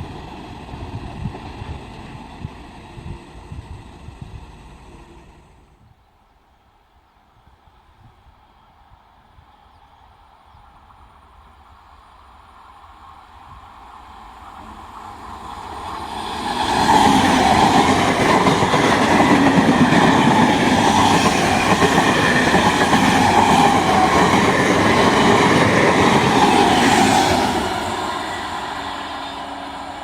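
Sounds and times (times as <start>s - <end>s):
train passing on rails: 0.0s - 5.9s, 7.4s - 30.0s.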